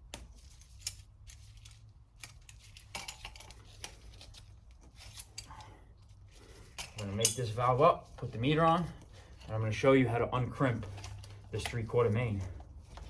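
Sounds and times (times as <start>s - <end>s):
metal tools clinking: 0.5s - 5.6s, 6.6s - 9.6s.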